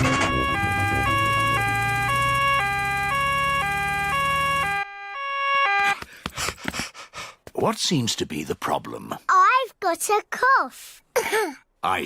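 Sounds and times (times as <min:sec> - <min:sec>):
cartoon two-tone siren: 0:00.0 - 0:06.0.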